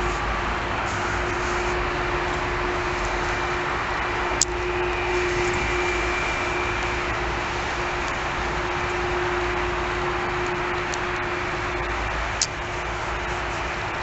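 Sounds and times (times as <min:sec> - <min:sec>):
engine roar: 0:00.0 - 0:14.0
low hum: 0:00.0 - 0:14.0.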